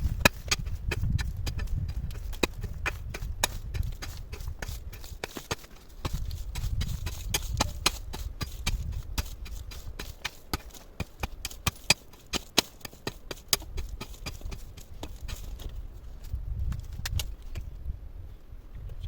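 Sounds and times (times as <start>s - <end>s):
low rumble: 0.0s - 4.0s.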